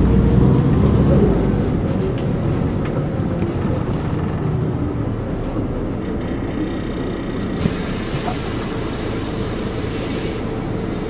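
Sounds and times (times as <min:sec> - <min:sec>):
bus diesel engine running: 0:00.0 - 0:11.0
brief air hiss: 0:07.6 - 0:11.0.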